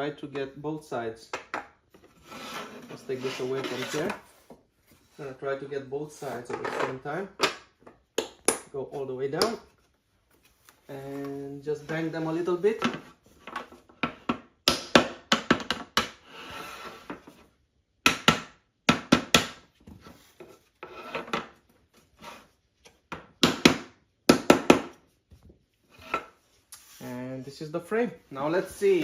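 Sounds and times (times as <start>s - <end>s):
plastic scraping on plastic: 2.0s - 4.6s
sharp knocks of plastic pieces: 14.0s - 16.2s.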